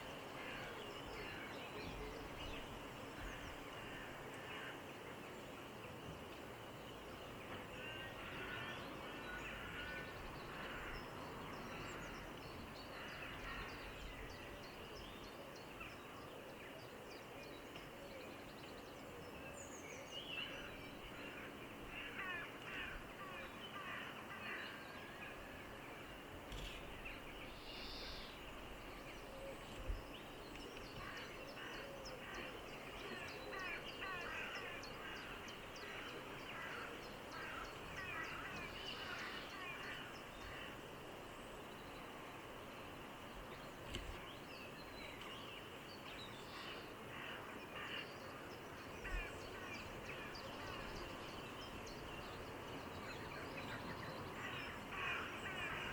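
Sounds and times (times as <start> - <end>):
steady background hiss: 0.0 - 55.9
ducks calling softly: 53.8 - 55.9.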